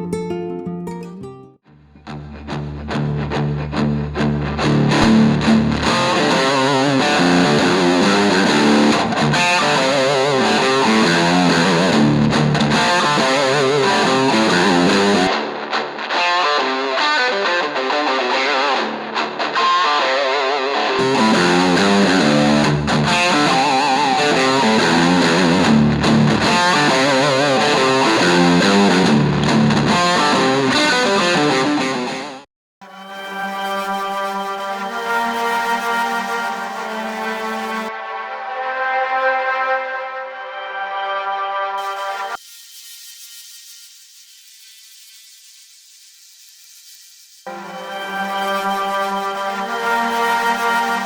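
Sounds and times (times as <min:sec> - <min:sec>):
distorted electric guitar: 0:01.9 - 0:38.5, 0:41.8 - 0:45.8, 0:47.5 - 0:51.0.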